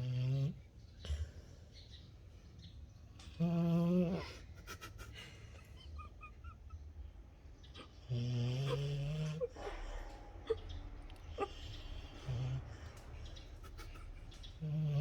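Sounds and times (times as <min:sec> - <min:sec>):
dog snoring: 0:07.8 - 0:10.6, 0:11.2 - 0:13.1, 0:14.6 - 0:15.0.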